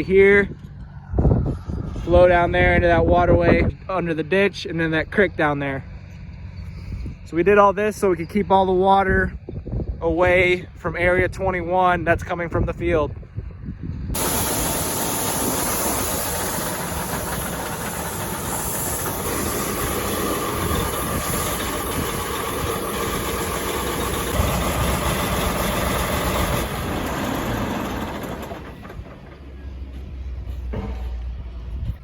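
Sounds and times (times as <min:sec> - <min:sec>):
strong hiss: 0:14.2 - 0:28.7
clanking rattles: 0:14.2 - 0:31.6
heavy machinery engine running: 0:14.2 - 0:31.8.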